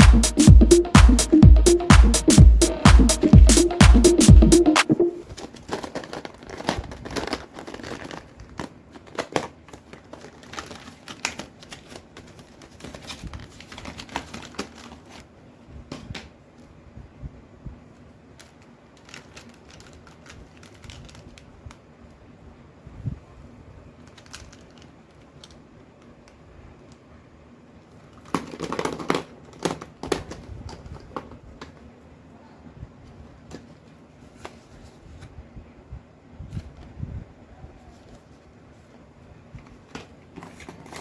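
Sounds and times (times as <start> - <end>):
packaging crinkling: 5.2 - 15.3, 18.4 - 21.4, 39.8 - 41.0.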